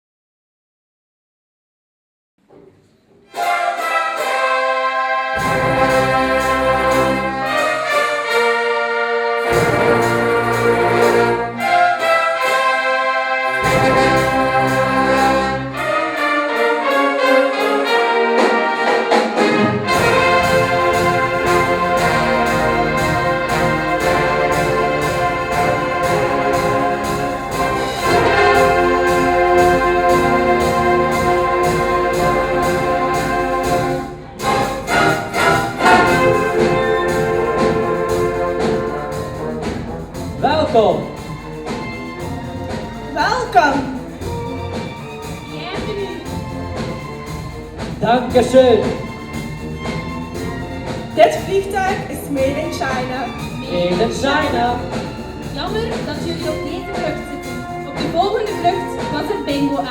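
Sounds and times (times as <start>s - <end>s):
orchestral brass music: 3.2s - 59.9s
heavy low notes: 9.4s - 11.6s, 19.8s - 59.9s.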